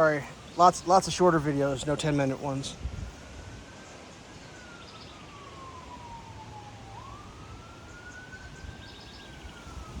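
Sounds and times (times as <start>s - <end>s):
siren wailing: 3.4s - 10.0s.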